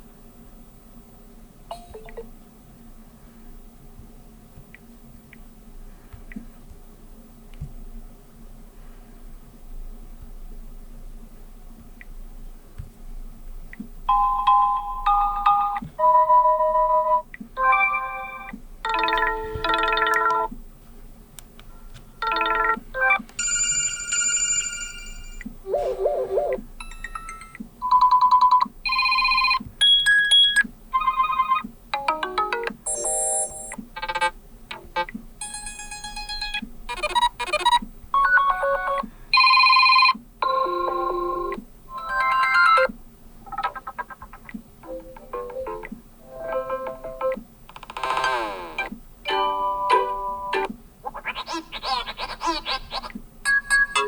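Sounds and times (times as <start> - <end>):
phone ringtone melodies: 14.1 - 20.5, 22.2 - 33.8, 38.3 - 42.9, 49.3 - 50.7, 53.5 - 54.0.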